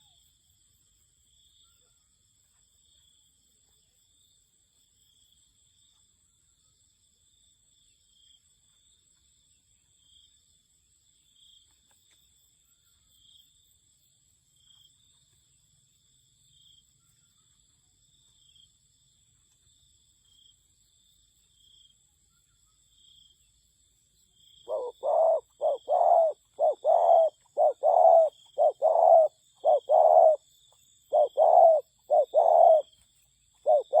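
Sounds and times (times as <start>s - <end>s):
dove cooing: 24.7s - 30.4s, 31.1s - 32.9s, 33.6s - 34.0s
faint high chirp: 31.1s - 34.0s.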